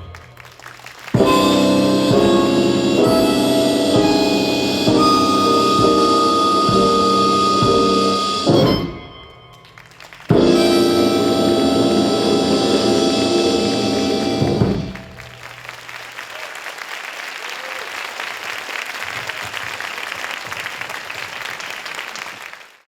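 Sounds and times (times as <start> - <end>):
crowd applauding: 0.0 - 3.3, 9.6 - 11.5, 14.4 - 22.9
dance music: 10.3 - 15.2.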